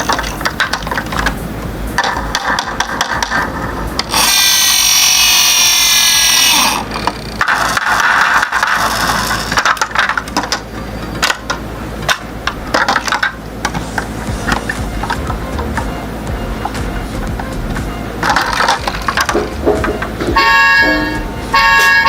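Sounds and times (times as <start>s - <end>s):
toy whirring grind: 0.0s - 16.0s.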